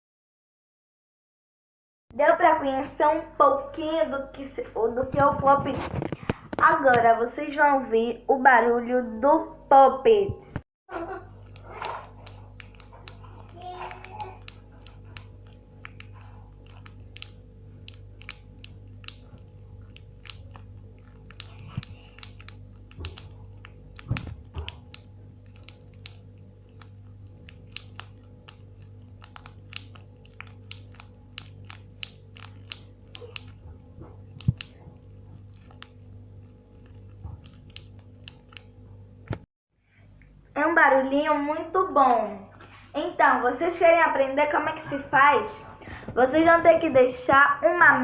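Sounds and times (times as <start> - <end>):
fidget toy popping clicks: 11.5 - 20.7, 21.3 - 26.2, 26.8 - 28.6, 29.2 - 33.6.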